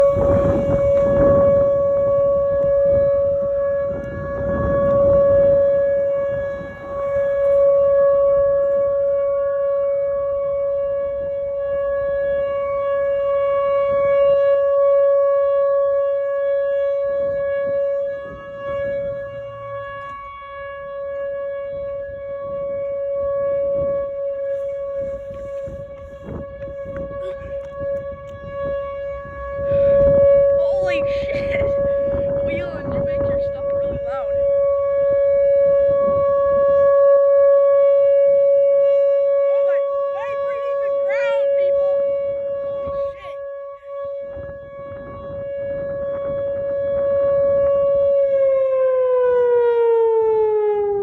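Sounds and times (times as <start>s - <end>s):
low rumbling noise: 0.0s - 9.6s
wailing siren tone: 0.0s - 51.0s
warning siren steady tone: 0.0s - 51.0s.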